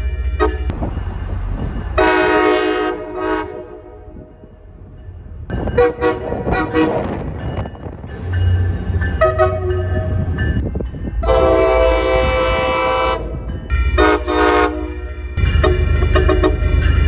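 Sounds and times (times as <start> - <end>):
train rumbling: 0.0 - 17.0
train horn blasts: 2.0 - 4.3, 5.7 - 7.2, 9.2 - 10.4, 11.2 - 16.7.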